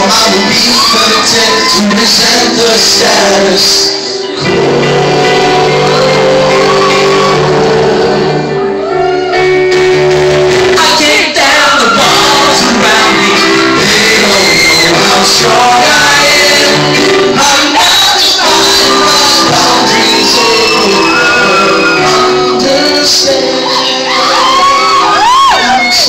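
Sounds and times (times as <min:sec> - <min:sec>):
voices singing: 0:00.0 - 0:08.8, 0:10.7 - 0:26.0
live rock band playing: 0:00.0 - 0:26.0.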